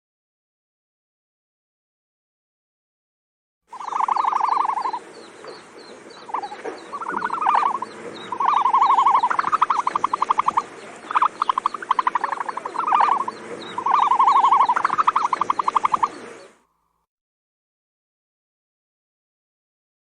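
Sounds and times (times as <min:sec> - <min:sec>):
animal trilling calls: 0:03.7 - 0:16.6.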